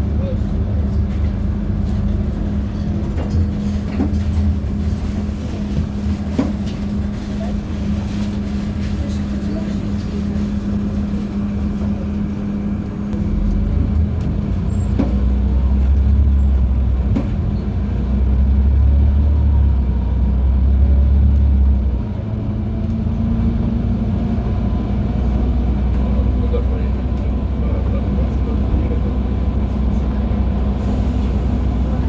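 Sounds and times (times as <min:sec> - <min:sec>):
bus engine hum: 0:00.0 - 0:32.0.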